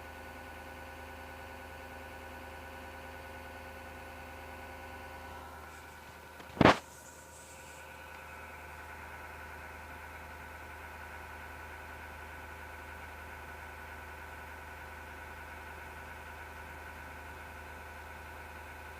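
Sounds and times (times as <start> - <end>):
computer fan humming and whining: 4.9 - 11.7.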